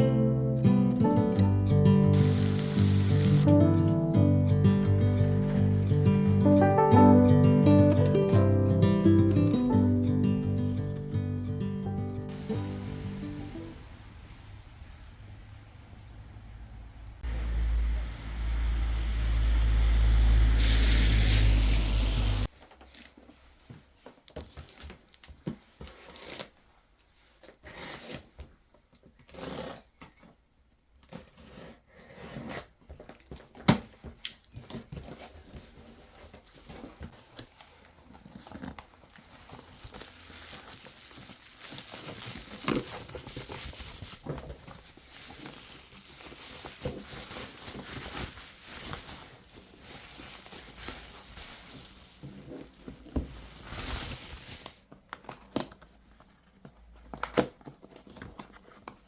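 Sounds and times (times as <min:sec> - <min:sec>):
packaging crinkling and tearing: 0:02.2 - 0:03.5, 0:24.0 - 0:28.4, 0:32.3 - 0:59.0.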